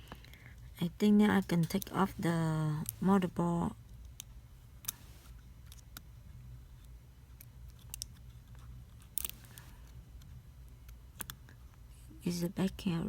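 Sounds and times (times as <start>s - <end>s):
steady low hum: 0.0s - 13.0s
small tools and plastic clicking: 6.8s - 11.6s.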